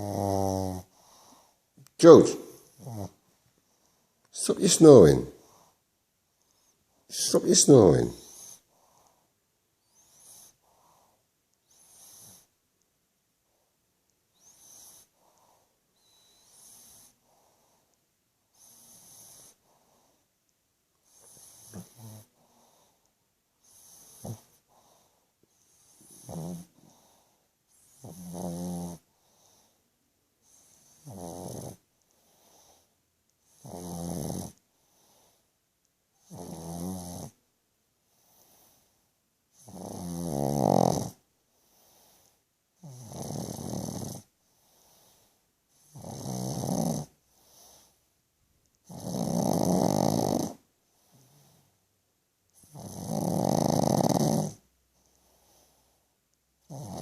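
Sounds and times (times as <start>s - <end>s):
dog snoring loudly: 0.0s - 3.2s, 7.2s - 9.0s, 9.9s - 11.1s, 11.7s - 12.5s, 14.4s - 17.6s, 18.5s - 20.0s, 21.0s - 22.9s, 23.6s - 29.6s, 30.4s - 32.8s, 33.4s - 35.3s, 36.2s - 37.4s, 39.5s - 41.2s, 42.8s - 47.9s, 48.8s - 51.6s, 52.6s - 54.6s, 56.6s - 57.0s.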